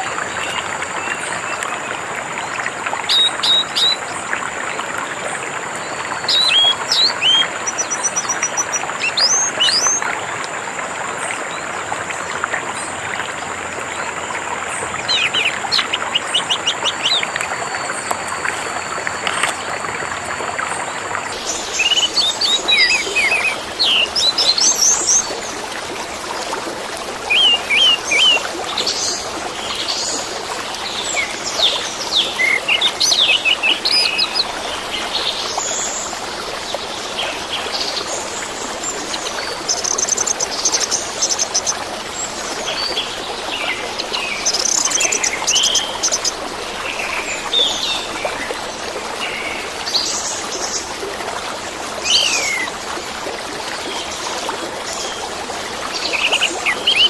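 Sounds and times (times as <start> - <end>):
running water: 0.0 - 57.0
thin steady high tone: 15.0 - 25.1.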